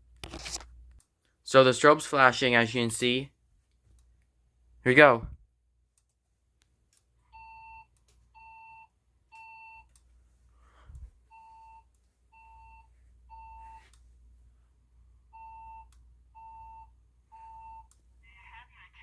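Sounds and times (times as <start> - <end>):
fire alarm evacuation beeps: 7.2 - 9.9, 11.3 - 13.9, 15.2 - 17.9.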